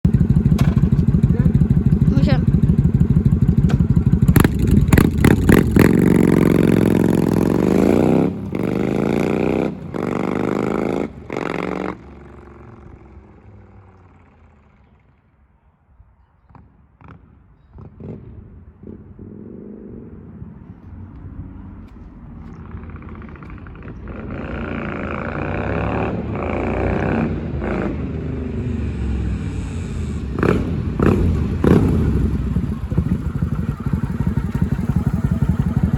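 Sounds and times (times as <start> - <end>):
motorcycle accelerating through upshifts: 0.1 - 14.9, 16.5 - 21.8, 22.5 - 35.9.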